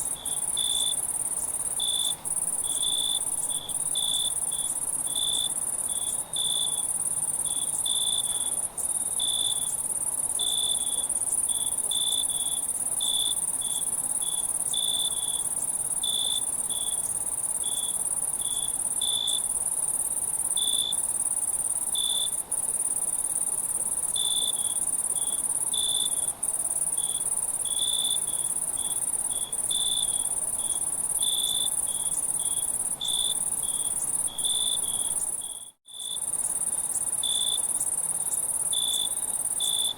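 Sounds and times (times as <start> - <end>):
crickets trilling: 0.0 - 39.9
short cricket chirps: 10.4 - 39.9.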